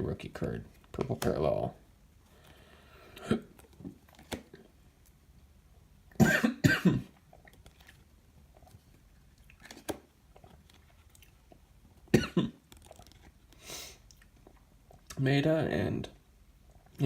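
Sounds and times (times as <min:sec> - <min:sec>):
man coughing: 0:06.2 - 0:07.1, 0:12.1 - 0:12.6.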